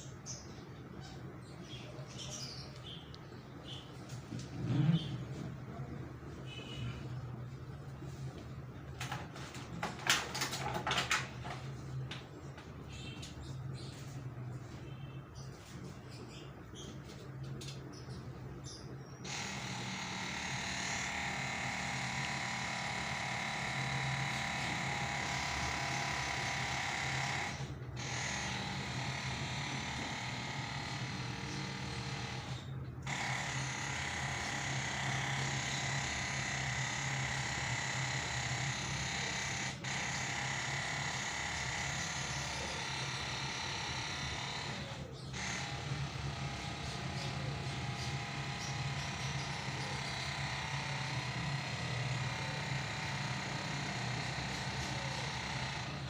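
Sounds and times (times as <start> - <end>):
small electric motor buzzing: 18.7 - 56.0.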